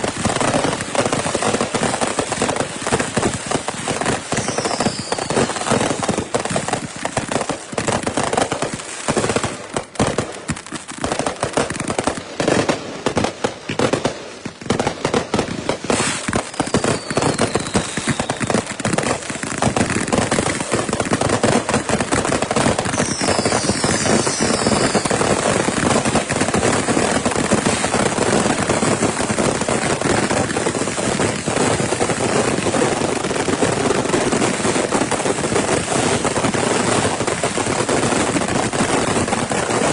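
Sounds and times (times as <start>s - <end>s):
fireworks crackling and popping: 0.0s - 39.9s
falling whistle tones: 4.4s - 5.6s, 16.7s - 18.4s, 22.9s - 25.1s.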